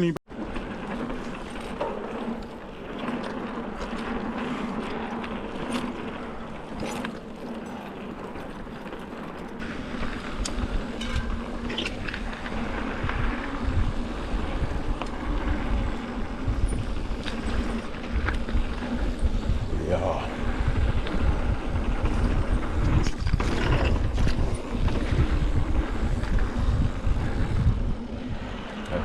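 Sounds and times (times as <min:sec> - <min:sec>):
bike clicks and rattles: 0:00.3 - 0:29.0
bike tyres rolling on dirt: 0:00.3 - 0:29.0
wind rumble on microphone: 0:09.5 - 0:29.0.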